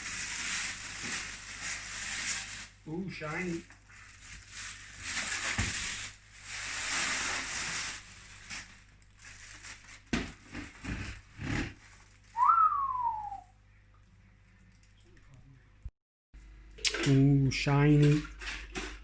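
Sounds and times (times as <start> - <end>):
rustling: 0.0 - 2.8, 3.7 - 12.6
person whistling rising note: 12.4 - 13.5.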